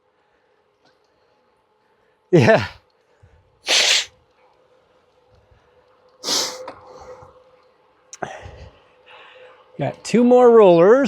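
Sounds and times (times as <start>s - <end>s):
faint steady hum: 0.0s - 11.0s
sharp breaths: 2.4s - 4.1s, 6.2s - 7.1s.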